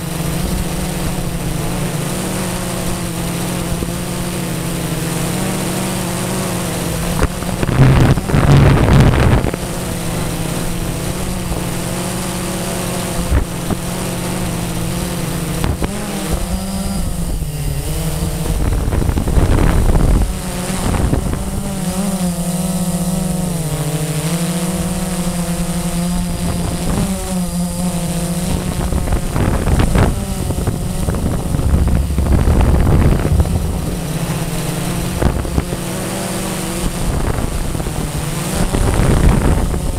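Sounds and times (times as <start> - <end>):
quadcopter motors whining: 0.0 - 39.9
wind buffeting microphone: 12.9 - 21.8, 28.5 - 39.9.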